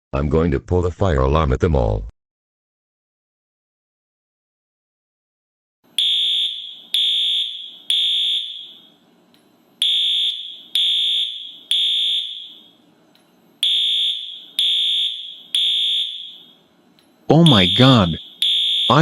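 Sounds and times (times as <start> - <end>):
fire alarm beeping: 6.0 - 9.0, 9.8 - 12.8, 13.6 - 16.7, 17.3 - 19.0.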